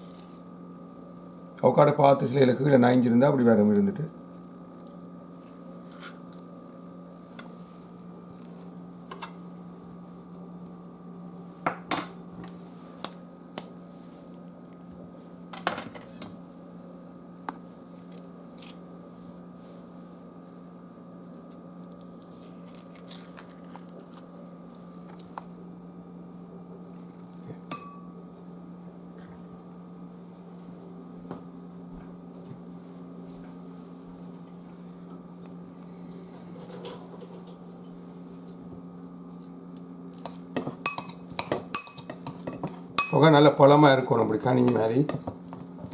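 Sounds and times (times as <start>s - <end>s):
steady hum: 0.0s - 45.9s
utensils clinking against dishes: 40.6s - 43.3s.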